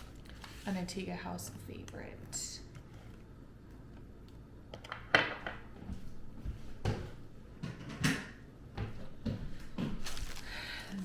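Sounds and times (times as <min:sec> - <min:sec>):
objects knocking and clattering: 0:04.7 - 0:06.0, 0:06.8 - 0:10.2.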